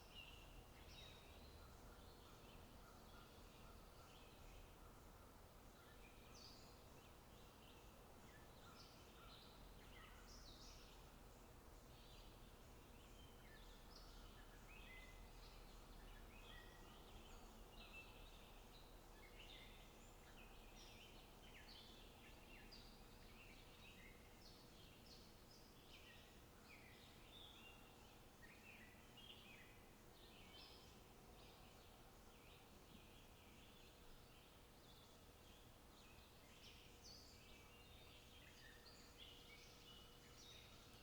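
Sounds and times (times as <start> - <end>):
quiet outdoor hiss: 0.0 - 41.0.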